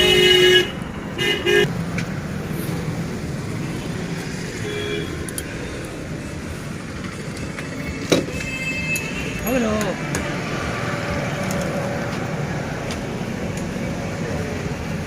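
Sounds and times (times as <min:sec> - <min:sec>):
vehicle horn honking: 0:00.0 - 0:01.7, 0:08.0 - 0:09.6
road traffic noise: 0:00.0 - 0:15.0.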